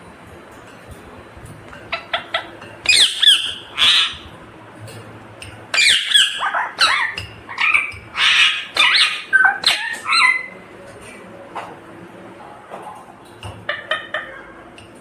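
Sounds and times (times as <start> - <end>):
parrot squawking: 1.9 - 4.3, 5.7 - 10.6.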